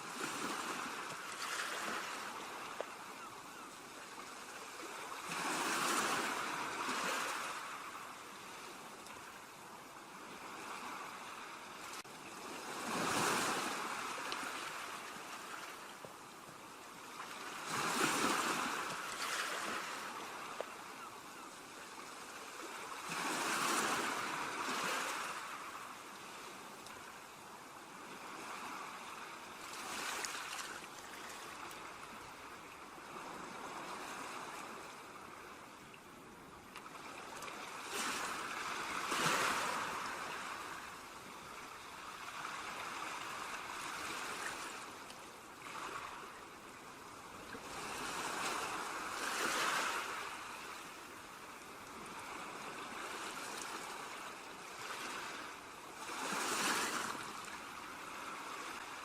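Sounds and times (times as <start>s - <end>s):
ocean surf breaking on a beach: 0.0s - 35.7s.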